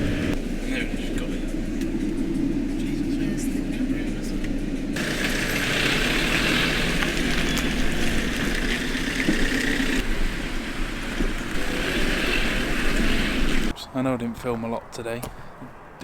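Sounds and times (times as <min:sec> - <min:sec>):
vehicle engine rumble: 0:00.0 - 0:13.8
road noise: 0:00.0 - 0:16.0.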